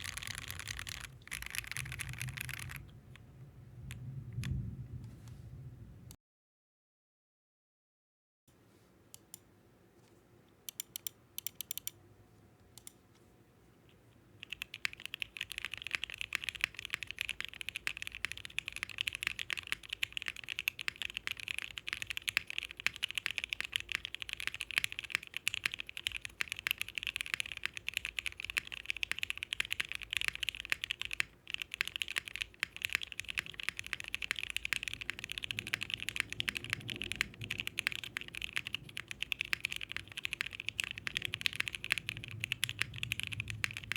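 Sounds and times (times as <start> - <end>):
mechanical keyboard typing: 0.0 - 2.9, 10.7 - 12.0, 14.4 - 43.9.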